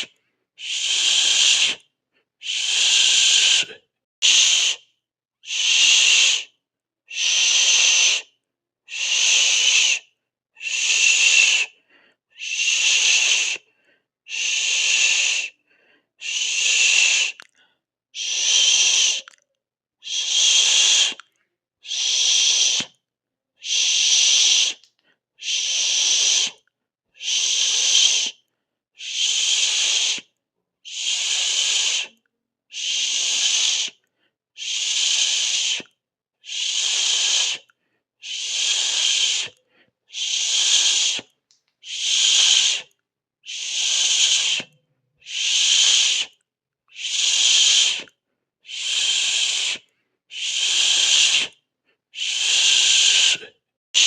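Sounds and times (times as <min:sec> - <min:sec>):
person hissing sss: 0:00.0 - 0:01.8, 0:02.4 - 0:04.8, 0:05.4 - 0:06.5, 0:07.1 - 0:08.2, 0:08.9 - 0:10.0, 0:10.6 - 0:11.7, 0:12.4 - 0:13.6, 0:14.3 - 0:15.6, 0:16.2 - 0:17.4, 0:18.2 - 0:19.3, 0:20.0 - 0:21.2, 0:21.8 - 0:22.9, 0:23.6 - 0:24.8, 0:25.4 - 0:26.6, 0:27.2 - 0:28.4, 0:29.0 - 0:30.3, 0:30.9 - 0:34.0, 0:34.6 - 0:48.1, 0:48.7 - 0:51.5, 0:52.2 - 0:54.0.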